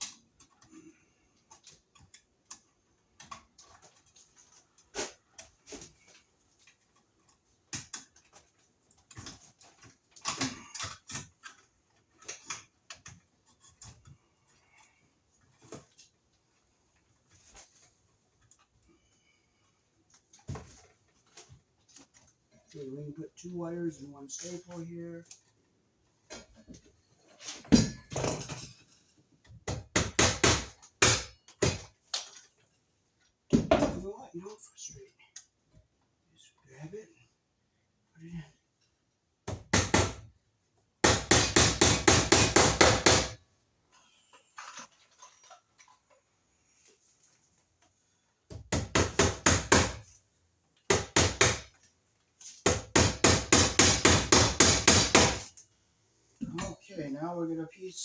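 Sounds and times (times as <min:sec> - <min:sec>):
hammer striking staple into wood: 0:41.0 - 0:43.4, 0:48.5 - 0:50.0, 0:50.9 - 0:51.7, 0:52.7 - 0:55.5.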